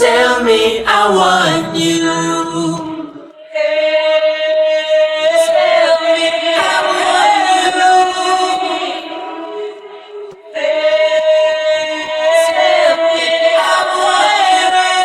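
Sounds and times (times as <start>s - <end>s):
layered wordless singing: 0.0s - 15.0s.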